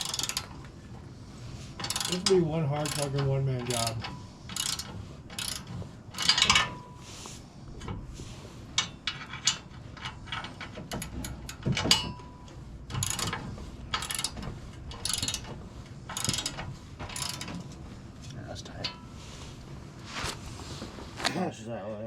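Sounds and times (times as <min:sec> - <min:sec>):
ratchet wrench clicking: 0:00.0 - 0:00.6, 0:01.8 - 0:06.7, 0:12.9 - 0:15.5, 0:16.1 - 0:17.6
metal parts knocking: 0:08.8 - 0:12.3.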